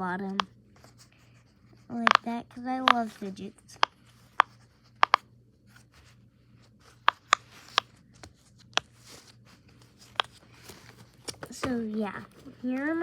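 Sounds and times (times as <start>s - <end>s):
fidget toy clicks and pops: 2.0s - 3.1s, 3.8s - 5.2s.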